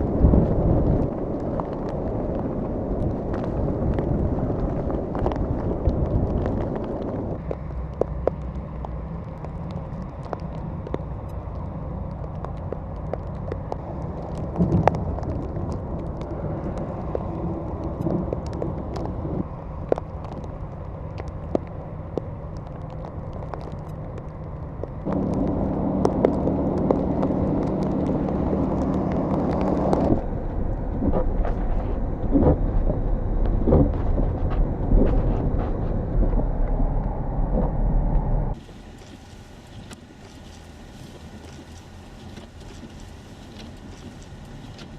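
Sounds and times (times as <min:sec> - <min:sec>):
vehicle engine running: 0:16.7 - 0:44.9.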